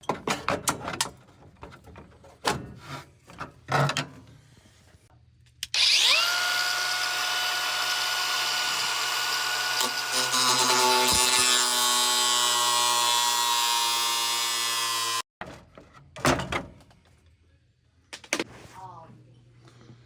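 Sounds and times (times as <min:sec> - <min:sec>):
power drill motor whine: 0:05.7 - 0:10.4.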